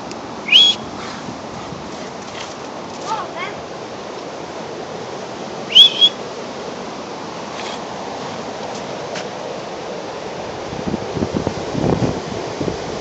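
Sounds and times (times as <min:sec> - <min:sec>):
steady rushing background noise: 0:00.0 - 0:13.0
person whistling: 0:00.5 - 0:00.9, 0:05.7 - 0:06.2.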